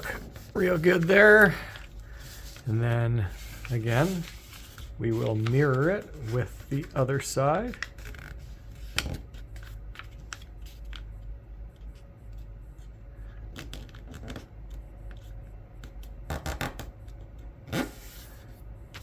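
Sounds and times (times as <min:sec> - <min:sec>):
paper crinkling: 0:00.0 - 0:11.2
paper rustling: 0:00.0 - 0:11.2.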